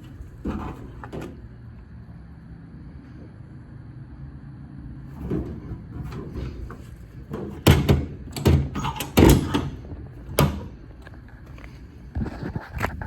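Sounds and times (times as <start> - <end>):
metal clunks and rattles: 0.0 - 1.6, 5.1 - 12.4.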